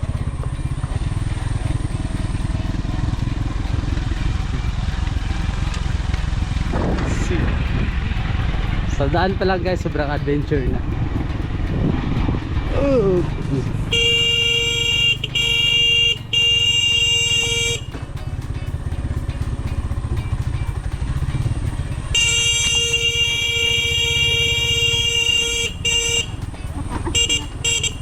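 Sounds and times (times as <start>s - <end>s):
motorcycle engine running: 0.0s - 28.0s
vehicle horn blasts: 13.8s - 18.0s, 22.0s - 28.0s.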